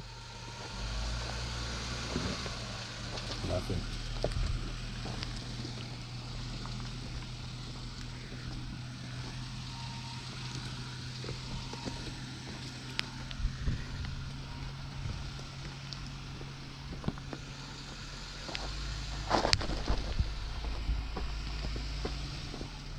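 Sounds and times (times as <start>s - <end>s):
off-road vehicle engine running: 0.0s - 22.9s
rocks clicking and knocking: 3.1s - 9.4s, 10.3s - 22.8s.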